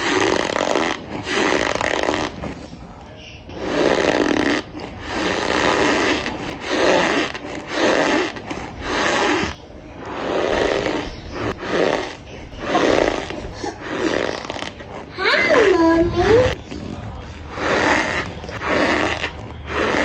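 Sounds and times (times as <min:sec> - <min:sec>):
cornstarch squeaking and crunching: 0:00.0 - 0:20.0.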